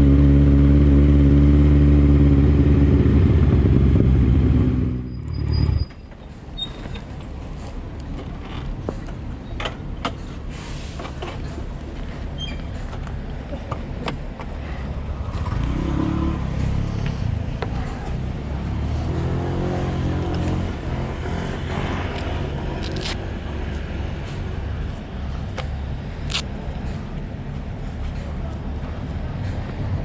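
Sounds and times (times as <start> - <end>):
vehicle engine running: 0.0 - 5.2
road noise: 0.0 - 30.0.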